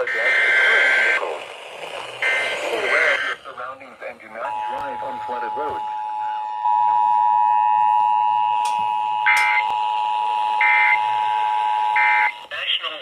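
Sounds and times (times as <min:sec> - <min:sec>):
screeching digital data bursts: 0:02.2 - 0:03.4
two-tone alert signal: 0:04.5 - 0:09.9.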